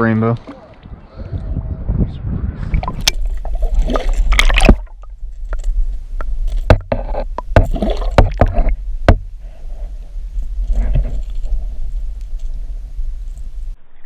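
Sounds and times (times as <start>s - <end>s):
steady low rumble: 0.8s - 14.0s
sharp knocks and thumps on boat: 6.6s - 9.3s
rustling handling noise: 9.9s - 13.7s.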